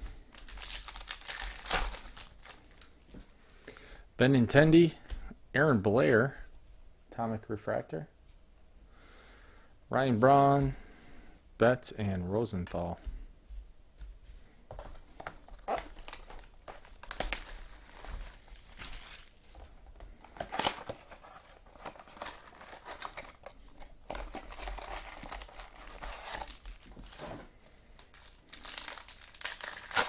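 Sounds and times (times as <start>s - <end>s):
wrappers torn and crinkled: 0.3s - 2.9s, 15.5s - 19.6s, 20.2s - 23.5s, 24.1s - 27.4s, 28.0s - 30.0s.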